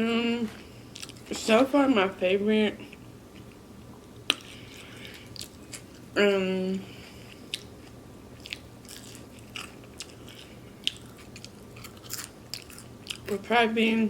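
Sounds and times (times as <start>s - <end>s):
chewing and biting: 0.9s - 1.3s, 4.3s - 6.0s, 7.1s - 13.3s.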